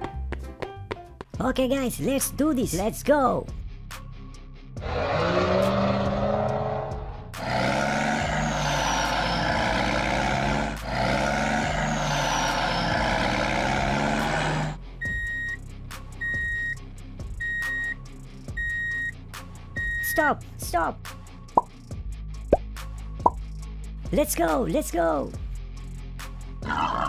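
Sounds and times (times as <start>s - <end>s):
reversing alarm beeping: 15.0s - 15.6s, 16.2s - 16.8s, 17.4s - 18.0s, 18.6s - 19.2s, 19.8s - 20.3s.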